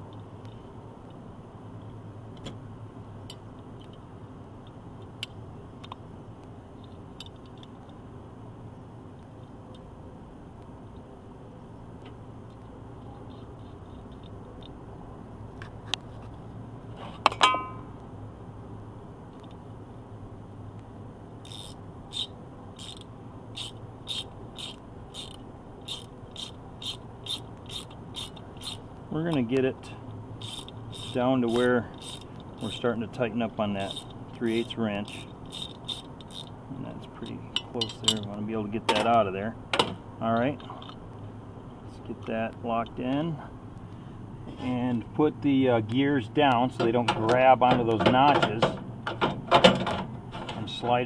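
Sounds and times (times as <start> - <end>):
steady low hum: 0.0 - 51.0
ratchet wrench rasping: 21.4 - 29.6, 30.4 - 32.9, 33.6 - 38.4
metallic clicks of hand tools: 21.5 - 29.7, 30.4 - 32.8, 33.8 - 36.5, 37.2 - 39.1.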